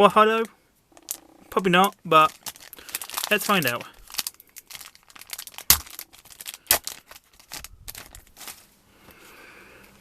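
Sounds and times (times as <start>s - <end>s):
foil wrapper tearing and crinkling: 1.8s - 8.7s.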